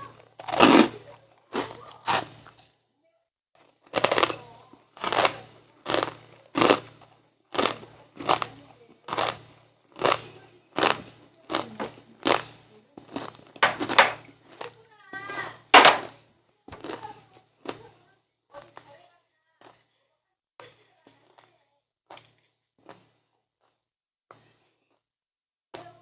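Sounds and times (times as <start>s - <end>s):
chewing crunchy snacks: 0.0s - 2.8s, 3.6s - 16.1s, 16.8s - 17.8s.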